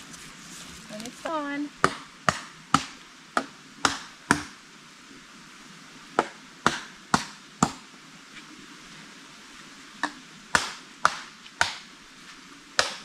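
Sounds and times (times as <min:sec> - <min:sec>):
blade chopping wood: 0:01.8 - 0:04.6, 0:06.2 - 0:07.8, 0:10.0 - 0:11.8, 0:12.8 - 0:13.0.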